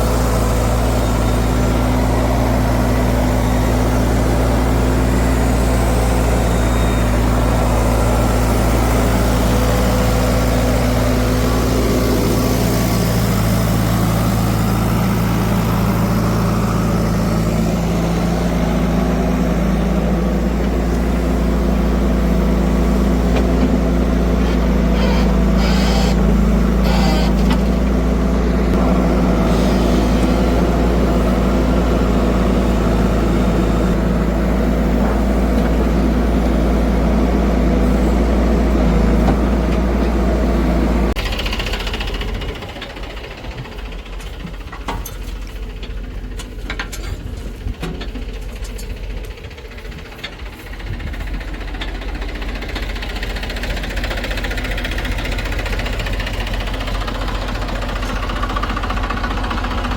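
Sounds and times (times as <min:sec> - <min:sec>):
engine humming: 0:00.0 - 0:59.9.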